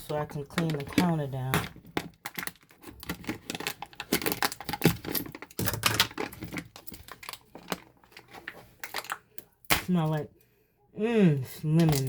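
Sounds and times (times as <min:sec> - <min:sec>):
plastic packaging crinkling: 0:00.0 - 0:09.3.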